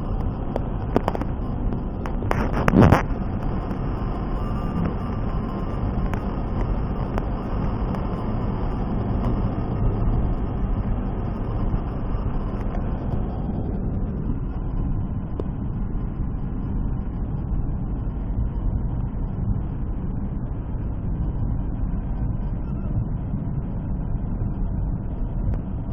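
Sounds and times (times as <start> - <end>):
vehicle engine and road rumble: 0.0 - 25.9.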